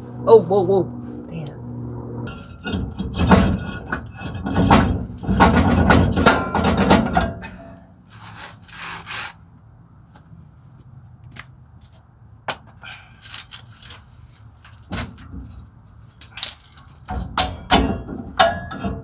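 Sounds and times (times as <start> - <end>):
brake parts scraping and clattering: 2.2 - 9.4, 12.6 - 19.0.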